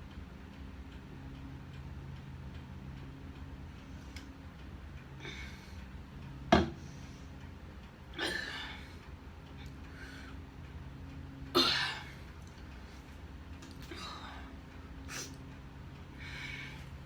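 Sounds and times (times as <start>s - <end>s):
person breathing sharply: 16.2s - 17.0s.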